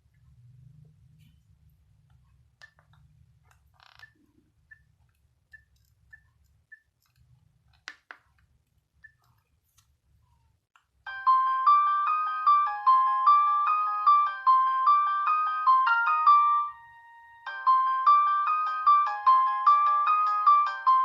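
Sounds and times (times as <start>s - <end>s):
polyphonic phone ringtone: 11.1s - 21.0s.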